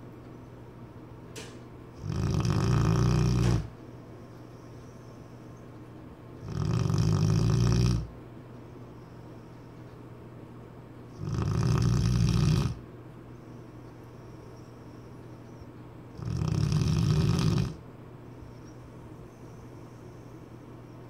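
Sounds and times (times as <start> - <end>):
dog snoring: 2.0 - 3.8, 6.4 - 8.2, 11.1 - 12.8, 16.1 - 17.8.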